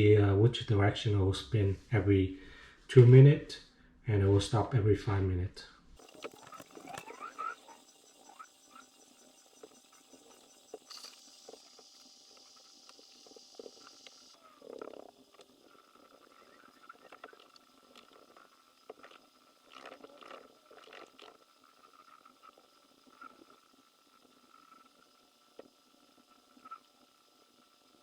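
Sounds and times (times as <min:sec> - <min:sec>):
small electric motors whining: 0:06.0 - 0:28.0.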